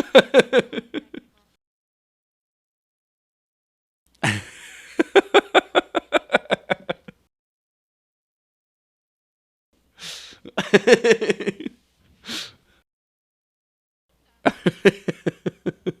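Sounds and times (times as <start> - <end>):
man laughing: 0.0 - 1.3, 4.2 - 7.3, 10.4 - 11.7, 14.4 - 16.0
man gasping breath: 10.0 - 10.5, 12.2 - 12.8.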